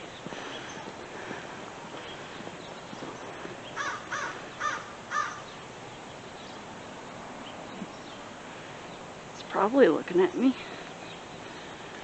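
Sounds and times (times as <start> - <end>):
crow cawing: 3.8 - 5.5.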